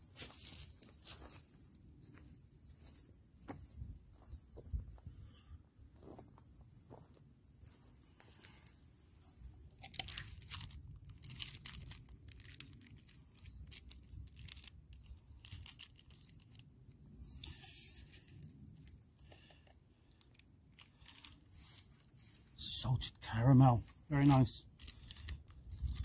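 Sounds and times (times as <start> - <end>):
plastic wrapper crinkling: 9.8 - 16.7, 17.4 - 22.2, 24.2 - 26.0.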